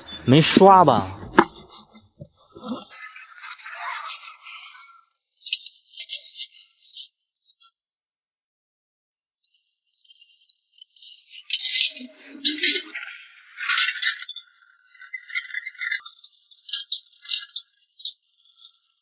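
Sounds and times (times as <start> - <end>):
pot being scrubbed: 11.6 - 14.5.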